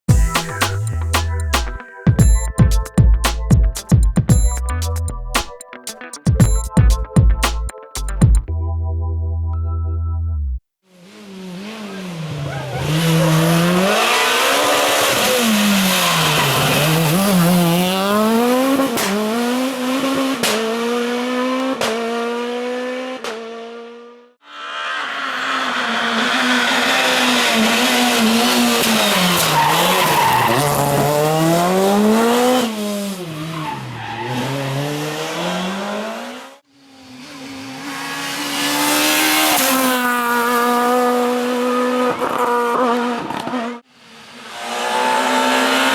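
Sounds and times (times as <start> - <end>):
rally car engine revving: 11.0 - 45.9.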